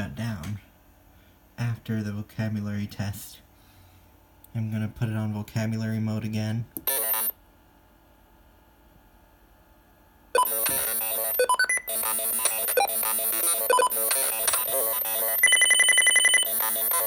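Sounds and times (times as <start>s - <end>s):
fast electronic beeps: 6.8s - 7.3s, 10.4s - 17.0s
electronic ringtone tones: 10.4s - 17.0s.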